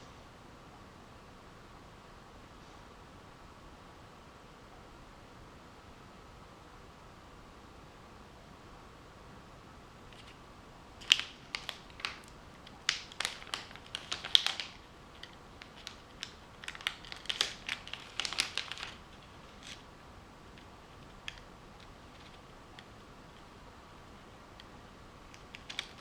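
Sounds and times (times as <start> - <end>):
small sharp clicks and crackles: 10.1 - 10.4, 11.0 - 26.0.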